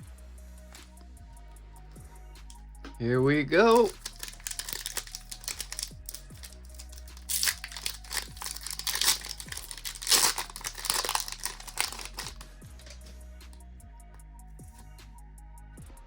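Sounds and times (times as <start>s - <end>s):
foil wrapper tearing and crinkling: 3.6s - 13.1s.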